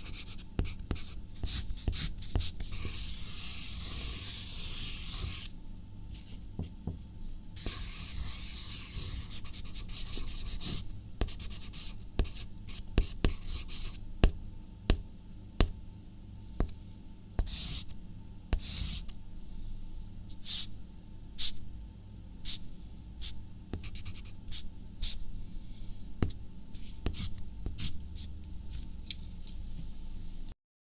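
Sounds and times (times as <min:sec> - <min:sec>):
pen scratching on paper: 0:00.0 - 0:05.5, 0:07.6 - 0:14.0, 0:17.4 - 0:17.8, 0:18.6 - 0:19.1, 0:27.0 - 0:27.9
steady low hum: 0:00.0 - 0:30.5.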